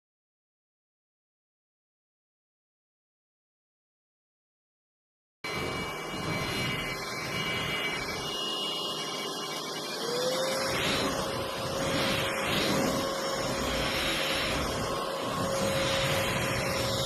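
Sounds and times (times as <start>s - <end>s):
stick vacuum running: 5.5s - 17.0s.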